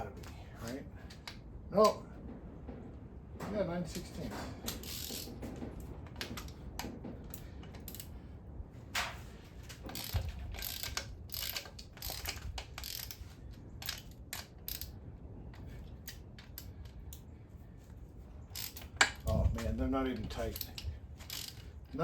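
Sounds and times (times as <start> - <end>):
hand ratchet clicking: 4.7 - 5.4, 6.1 - 8.2, 9.9 - 17.3, 18.5 - 22.0.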